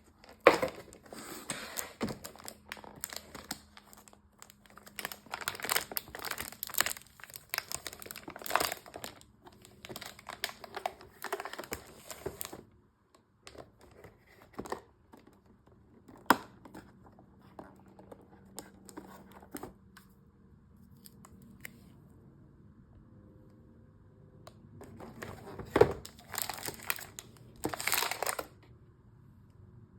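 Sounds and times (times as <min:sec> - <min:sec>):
packaging tearing and crinkling: 0:00.2 - 0:12.6, 0:25.7 - 0:28.5.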